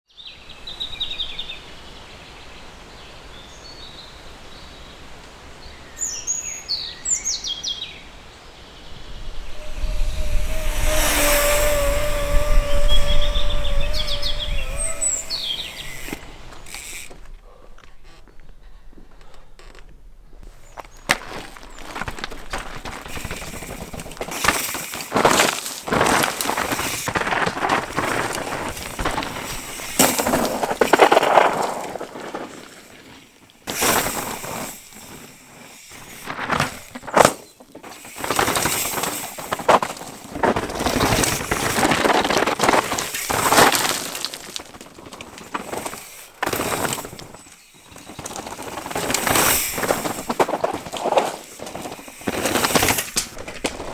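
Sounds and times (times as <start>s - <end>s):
bike tyres crunching over stones: 9.2s - 17.4s, 20.4s - 53.9s
bike knocking on rocks: 20.5s - 32.9s, 35.9s - 53.9s.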